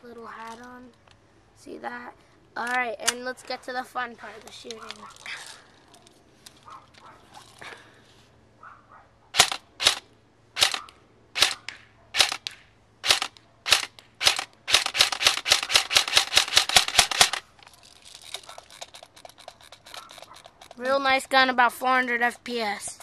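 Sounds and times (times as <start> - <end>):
airsoft rifle shots: 9.4 - 10.0, 10.6 - 17.4.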